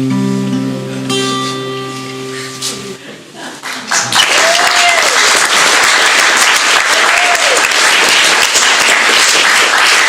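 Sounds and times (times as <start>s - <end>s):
audience applauding: 3.6s - 10.0s
person whooping: 4.2s - 5.3s, 6.9s - 7.6s.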